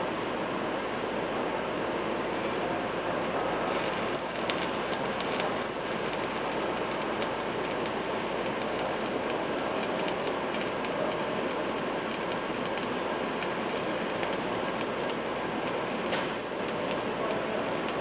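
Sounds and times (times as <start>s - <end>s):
welding arc crackling: 3.6s - 18.0s.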